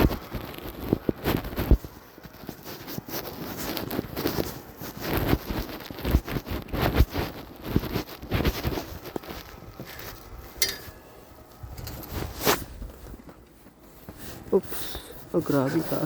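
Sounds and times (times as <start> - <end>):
footsteps crunching in snow: 0.0 - 16.0
wind buffeting microphone: 0.0 - 16.0.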